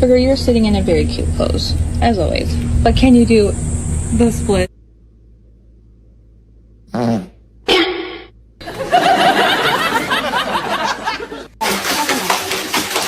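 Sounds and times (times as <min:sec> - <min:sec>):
people laughing: 0:08.6 - 0:13.0.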